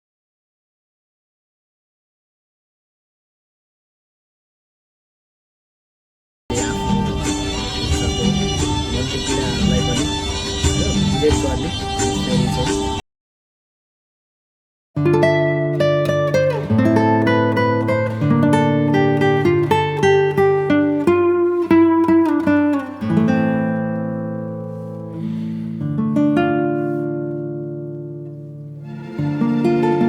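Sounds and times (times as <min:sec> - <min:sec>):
acoustic guitar picking a melody: 0:06.5 - 0:13.0, 0:15.0 - 0:30.0.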